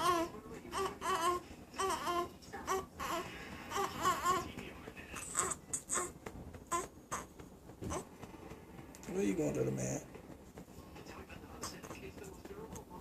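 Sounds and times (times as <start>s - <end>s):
newborn baby crying: 0.0s - 4.5s, 5.2s - 7.3s.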